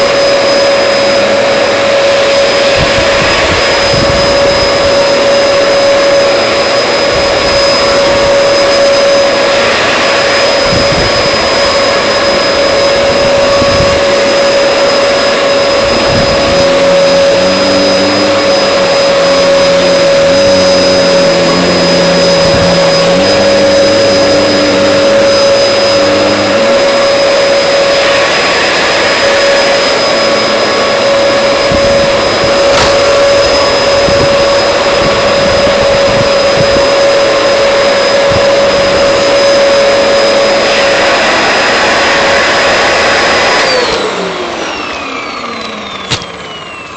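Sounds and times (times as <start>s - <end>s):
vacuum cleaner running: 0.0s - 46.9s
low held notes stepping in pitch: 15.4s - 27.9s.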